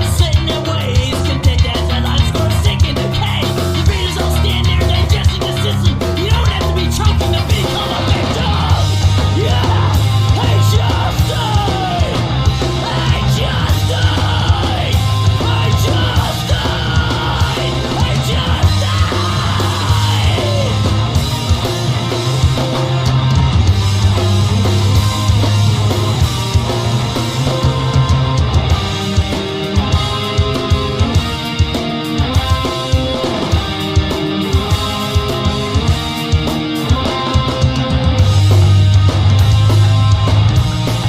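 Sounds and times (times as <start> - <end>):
shouted vocals: 0.0 - 21.2
heavy bass: 0.0 - 41.0
heavy rock song: 0.0 - 41.0.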